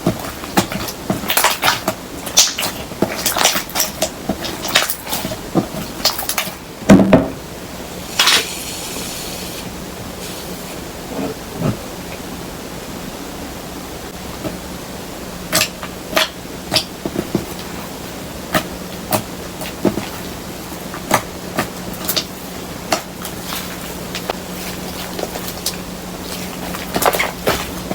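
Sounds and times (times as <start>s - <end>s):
loud thump: 6.9s - 7.4s.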